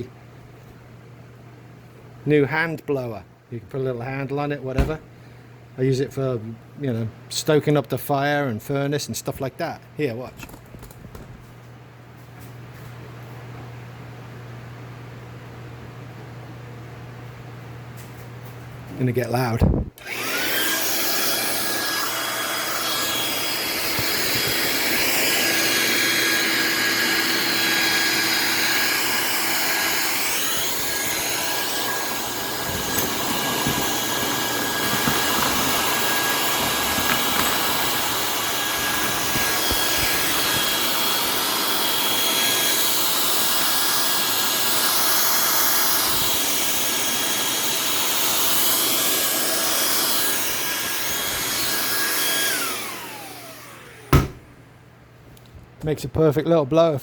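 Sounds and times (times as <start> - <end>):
vacuum motor blower whining: 19.6 - 54.4.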